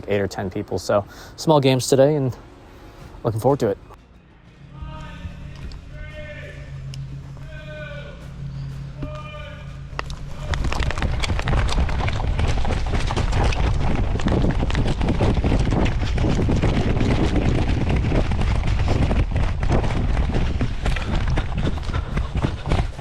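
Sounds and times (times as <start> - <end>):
wind buffeting microphone: 10.0 - 23.0.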